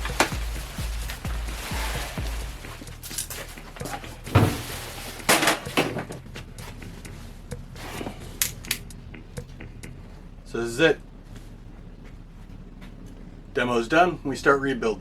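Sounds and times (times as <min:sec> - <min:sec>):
objects knocking and clattering: 0:00.0 - 0:06.5
dull thump: 0:00.0 - 0:10.1.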